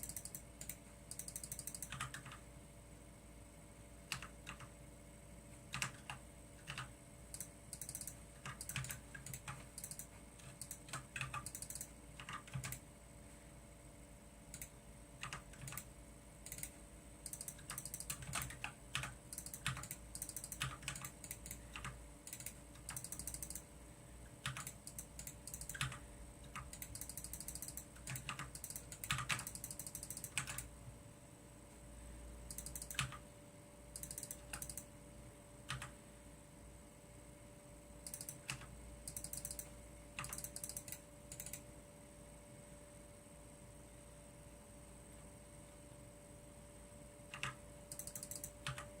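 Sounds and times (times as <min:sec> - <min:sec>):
faint steady hum: 0:00.0 - 0:49.0
keyboard key clicks: 0:34.0 - 0:34.8, 0:38.1 - 0:41.6.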